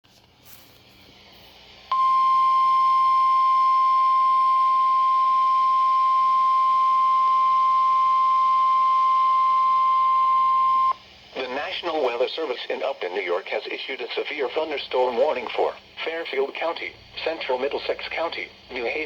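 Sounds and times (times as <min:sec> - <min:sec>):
steady warning alarm tone: 0:01.9 - 0:11.0.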